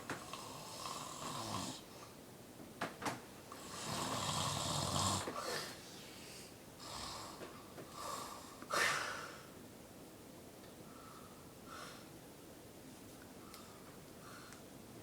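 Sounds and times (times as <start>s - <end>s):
person snoring: 0.3s - 1.8s, 3.6s - 5.3s.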